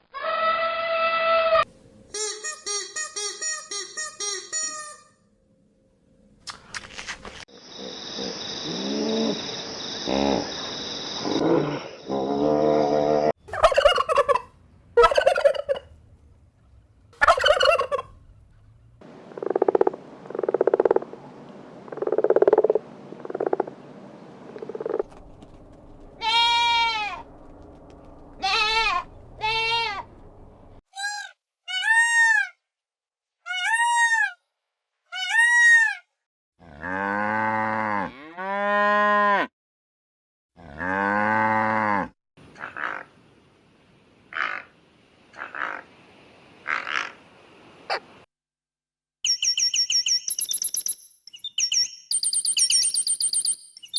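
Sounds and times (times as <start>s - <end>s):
fowl low honks: 13.5s - 15.8s, 17.2s - 18.1s, 25.0s - 30.0s
fowl rising and falling cries: 13.5s - 15.8s, 17.2s - 18.1s, 26.2s - 27.3s, 28.4s - 30.0s
fowl chattering calls: 13.5s - 15.9s, 17.2s - 18.1s.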